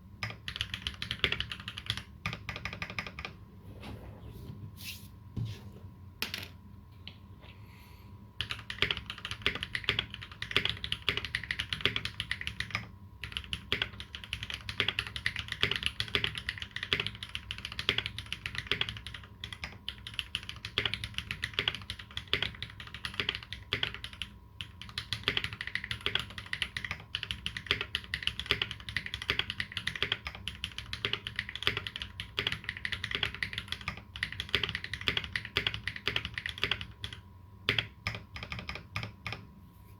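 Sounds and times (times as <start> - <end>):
mechanical keyboard typing: 0.2 - 3.4, 8.4 - 39.5.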